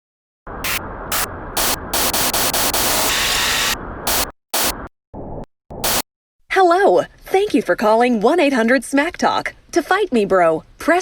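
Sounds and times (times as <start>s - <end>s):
static hiss bursts: 0.6s - 4.9s, 5.7s - 6.0s.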